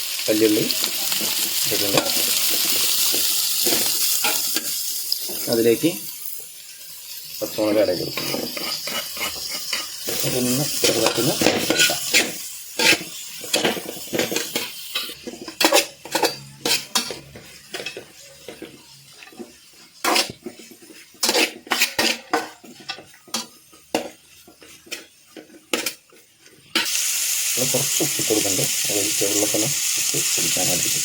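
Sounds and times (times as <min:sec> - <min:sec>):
vegetables sizzling in oil: 0:00.0 - 0:31.0
spoon scraping a pan: 0:00.8 - 0:05.5, 0:07.5 - 0:27.0.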